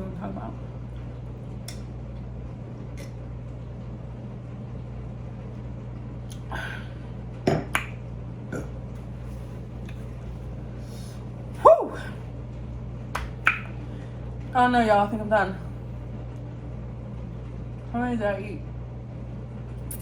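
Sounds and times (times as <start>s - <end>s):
steady low hum: 0.0s - 20.0s
mouth clicks while eating: 1.6s - 1.9s.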